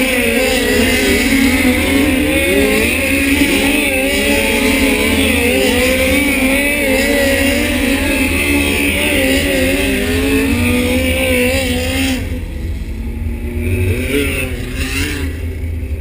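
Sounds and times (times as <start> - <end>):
race car engines droning: 0.0 - 16.0.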